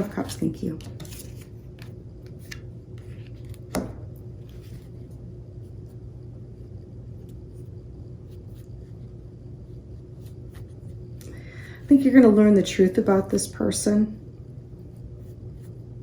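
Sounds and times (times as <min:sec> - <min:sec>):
low room hum: 0:00.0 - 0:16.0
card tap: 0:03.7 - 0:04.0.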